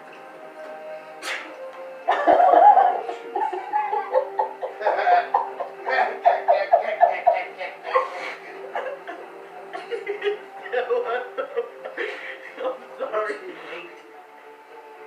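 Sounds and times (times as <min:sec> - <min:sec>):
person laughing hard: 0:02.1 - 0:12.8.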